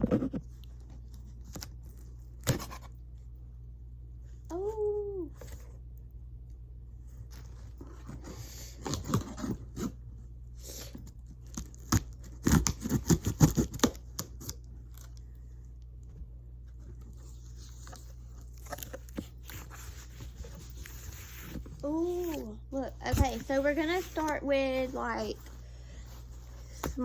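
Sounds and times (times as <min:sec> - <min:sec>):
cardboard box tearing and scraping: 0:08.0 - 0:10.0, 0:11.5 - 0:14.6.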